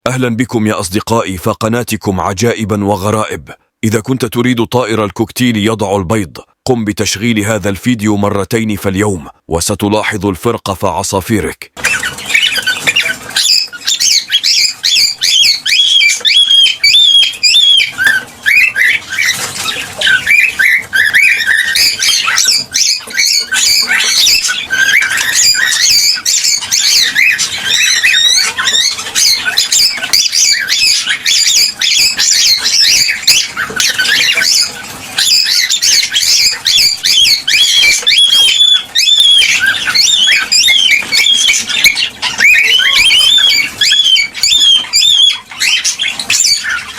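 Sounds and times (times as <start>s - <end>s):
cockatiels chirping and whistling: 11.8s - 46.9s.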